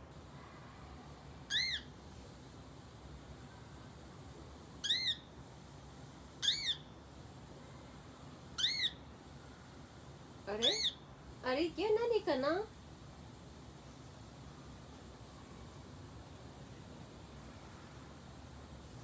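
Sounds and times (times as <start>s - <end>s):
bird whistled calls: 1.5s - 1.9s, 4.8s - 5.3s, 6.4s - 6.9s, 8.6s - 9.0s, 10.6s - 11.0s.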